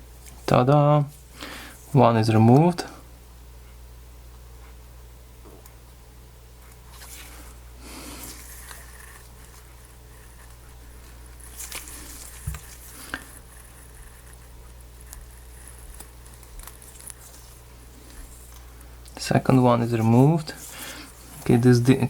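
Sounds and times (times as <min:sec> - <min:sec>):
steady low hum: 0:00.0 - 0:22.0
tape backing peeling: 0:06.9 - 0:18.7.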